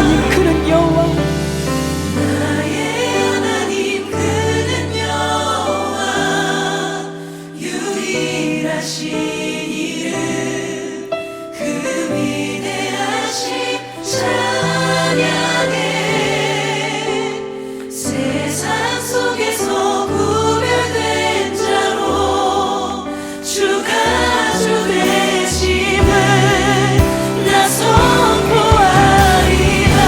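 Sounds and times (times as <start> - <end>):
choir singing a hymn: 0.0 - 30.0
instrumental accompaniment: 24.2 - 30.0.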